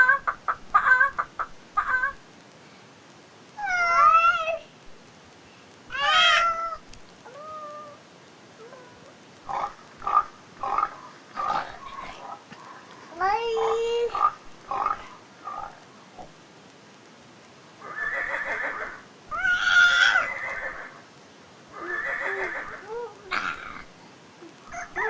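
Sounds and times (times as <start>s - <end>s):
baby imitating cat meows: 3.6s - 4.7s, 5.9s - 8.0s, 19.3s - 20.3s, 21.8s - 23.9s.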